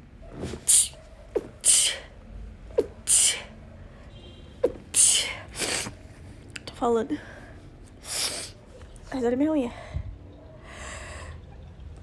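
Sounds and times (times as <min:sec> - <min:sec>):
person sneezing: 0:00.6 - 0:01.0
sharp intake of breath: 0:08.0 - 0:08.6.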